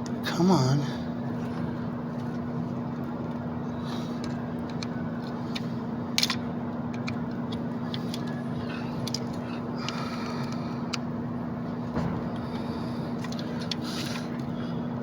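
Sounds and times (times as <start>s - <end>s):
steady hum: 0.0s - 15.0s
tools clicking on engine parts: 4.2s - 11.1s.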